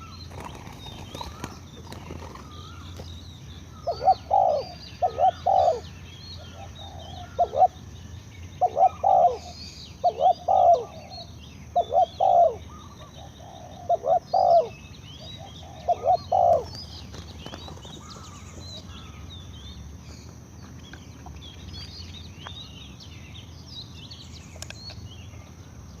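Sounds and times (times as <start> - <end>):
dove cooing: 0.0 - 3.0, 3.8 - 7.8, 8.6 - 19.1
small birds chirping faintly: 0.0 - 26.0.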